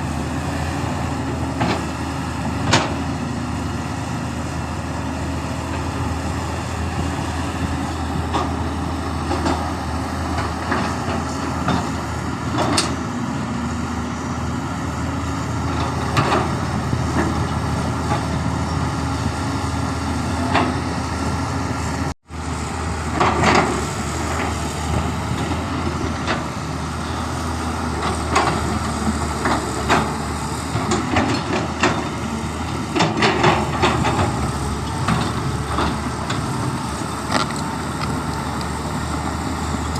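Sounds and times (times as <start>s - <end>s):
diesel excavator engine running: 0.0s - 39.9s.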